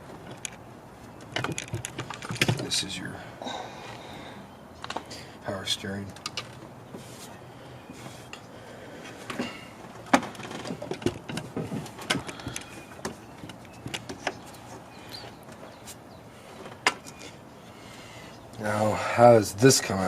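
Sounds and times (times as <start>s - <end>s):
tools handling engine parts: 0.0s - 2.9s, 6.1s - 16.0s.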